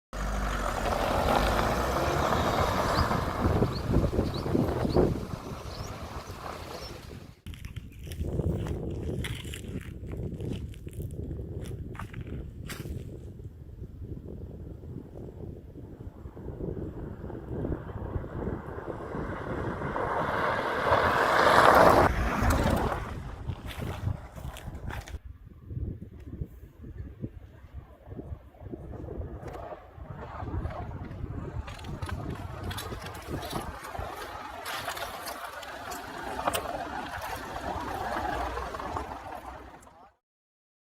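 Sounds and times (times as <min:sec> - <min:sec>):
car engine low rumble: 0:00.1 - 0:07.4, 0:14.2 - 0:25.2, 0:27.1 - 0:40.2
wind buffeting microphone: 0:00.3 - 0:40.0.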